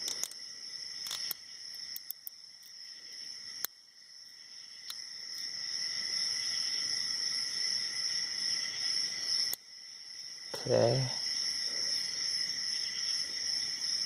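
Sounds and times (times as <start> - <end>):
lock picking metallic clicks: 1.0 - 2.8.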